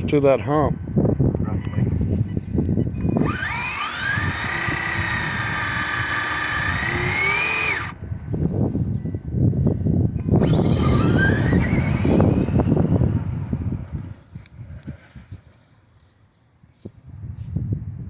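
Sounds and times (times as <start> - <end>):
electric motor whining: 2.8 - 8.0, 10.2 - 14.2.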